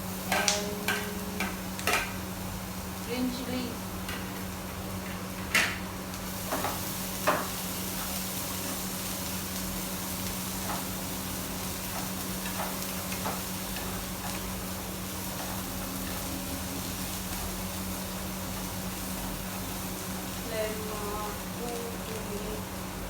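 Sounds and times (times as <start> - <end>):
vegetables sizzling in oil: 0.0 - 23.0.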